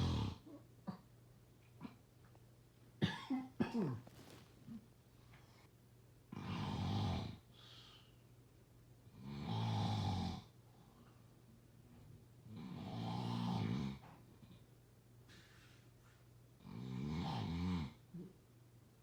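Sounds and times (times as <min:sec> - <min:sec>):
snoring: 0:00.0 - 0:00.4, 0:06.3 - 0:07.4, 0:09.1 - 0:10.5, 0:12.5 - 0:14.0, 0:16.6 - 0:18.0.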